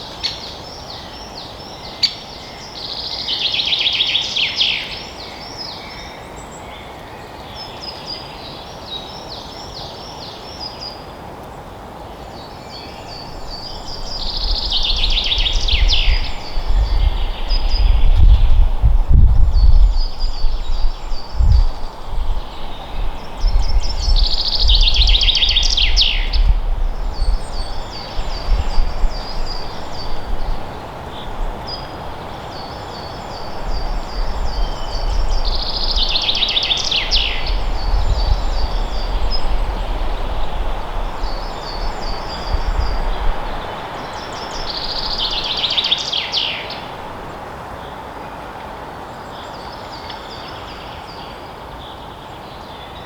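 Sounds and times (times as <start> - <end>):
bird song with falling flourish: 12.0 - 48.0
songbirds singing high notes: 13.0 - 47.0
wind rumbling in gusts: 13.0 - 49.3.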